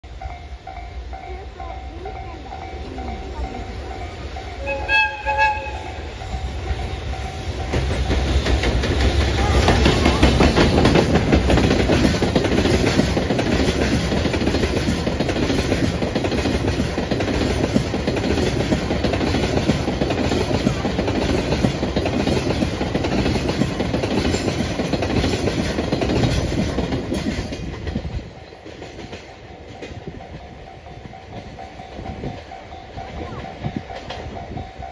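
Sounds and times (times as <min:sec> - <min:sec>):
train wheels clattering over rails: 0:00.3 - 0:34.9
train horn blast: 0:04.5 - 0:06.5.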